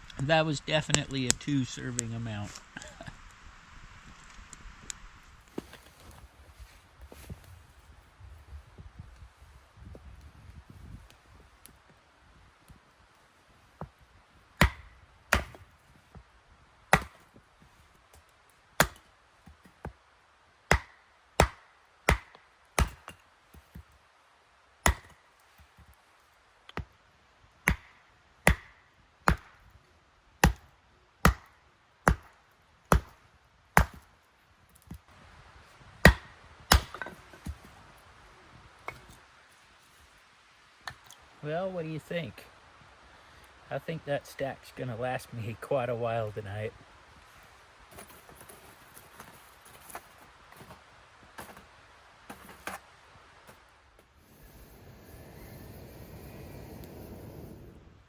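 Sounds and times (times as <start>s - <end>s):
firewood being chopped: 5.5s - 6.2s, 14.6s - 16.3s, 16.9s - 20.0s, 20.6s - 24.0s, 24.8s - 26.0s, 26.6s - 27.0s, 27.6s - 29.8s, 30.4s - 34.2s, 35.8s - 37.9s, 38.8s - 39.3s, 40.8s - 41.2s, 47.9s - 52.9s.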